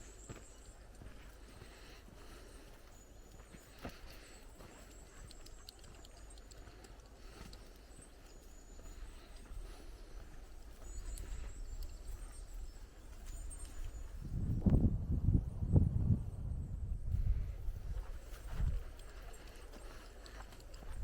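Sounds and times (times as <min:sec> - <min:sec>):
footsteps on forest path: 0:00.0 - 0:14.3, 0:17.3 - 0:21.0
wind buffeting microphone: 0:13.4 - 0:19.2.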